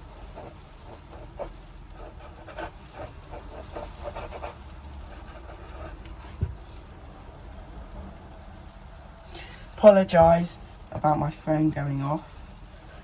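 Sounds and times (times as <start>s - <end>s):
low thump: 6.3s - 6.7s.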